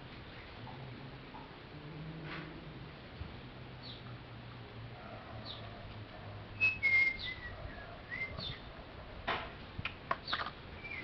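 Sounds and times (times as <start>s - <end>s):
whistled notes: 6.6s - 8.6s.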